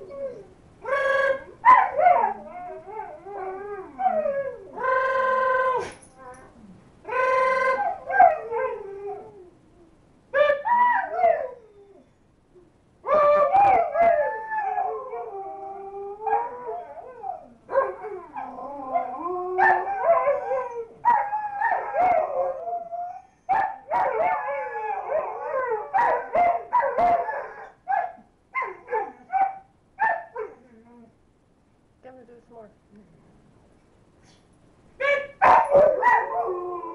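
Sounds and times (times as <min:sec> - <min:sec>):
dogs howling: 0:00.0 - 0:09.6, 0:13.1 - 0:30.7, 0:35.0 - 0:36.9
dogs yipping: 0:35.0 - 0:36.5.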